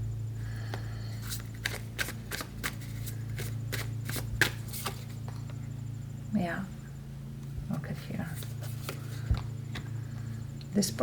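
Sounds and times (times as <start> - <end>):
steady low hum: 0.0 - 11.0
cards snapping: 1.2 - 5.5.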